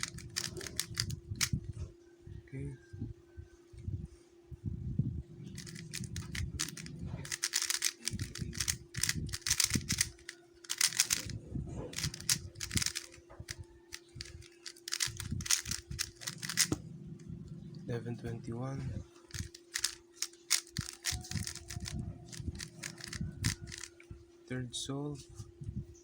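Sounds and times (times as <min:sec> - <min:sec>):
puzzle cube plastic clicking: 0:00.0 - 0:01.5, 0:05.5 - 0:13.2, 0:13.9 - 0:16.8, 0:19.3 - 0:23.9.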